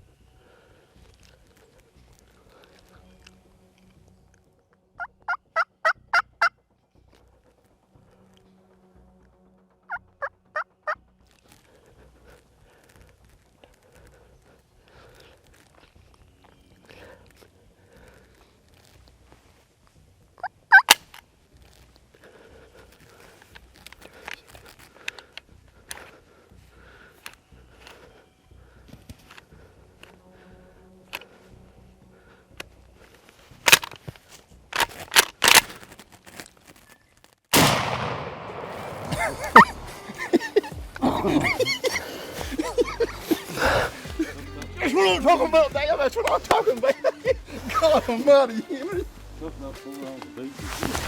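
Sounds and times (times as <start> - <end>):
turkey gobbling: 5.0 - 6.5, 20.4 - 21.0, 39.1 - 44.3
shotgun action clicking: 33.7 - 34.0, 37.6 - 38.7
loud gunshot: 37.5 - 40.0.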